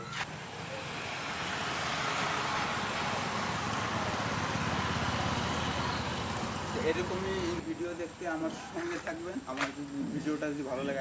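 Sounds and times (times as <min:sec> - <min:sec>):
motorcycle engine running: 0:00.4 - 0:07.6.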